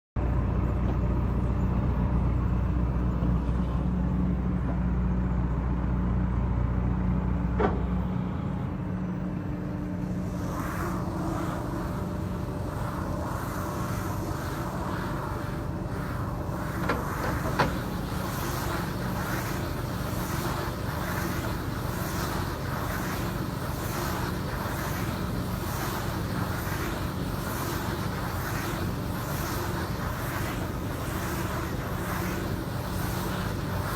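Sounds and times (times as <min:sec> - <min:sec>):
baling machine engine hum: 0:00.2 - 0:33.9
rhythmic swish: 0:09.8 - 0:33.9.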